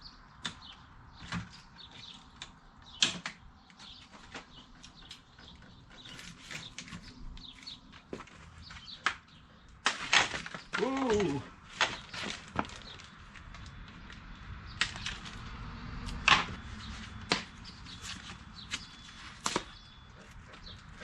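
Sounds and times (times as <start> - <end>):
clicks and knocks of bicycle parts: 0.4 - 15.4, 16.1 - 16.6.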